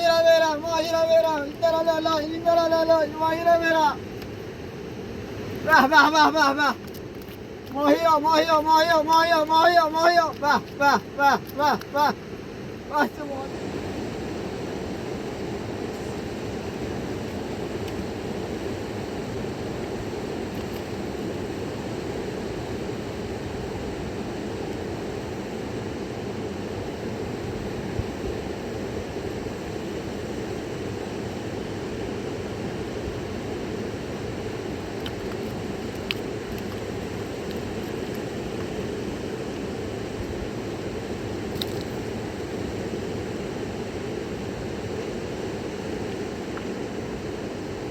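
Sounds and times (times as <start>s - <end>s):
fast-flowing river rushing: 0.0s - 47.9s
faint click: 41.5s - 42.0s.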